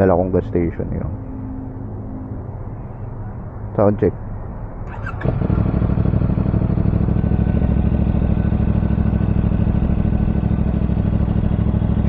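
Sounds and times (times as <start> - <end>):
motorcycle engine idling: 4.9 - 12.0.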